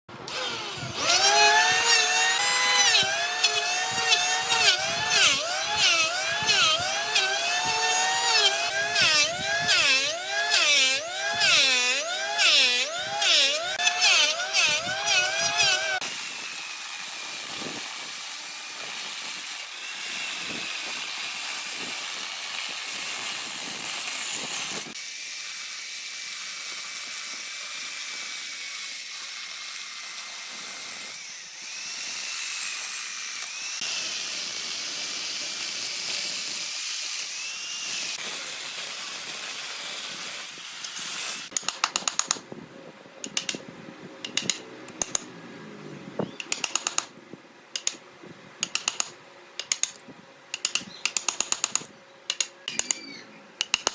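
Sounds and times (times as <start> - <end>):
power tool whining on wood: 0.2 - 41.6.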